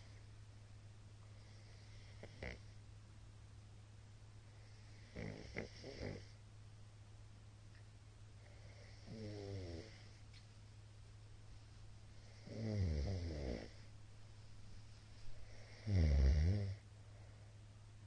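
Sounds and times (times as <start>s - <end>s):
steady low hum: 0.0s - 18.0s
man snoring: 1.4s - 2.7s, 4.9s - 6.3s, 8.6s - 10.0s, 12.2s - 13.8s, 15.4s - 16.8s.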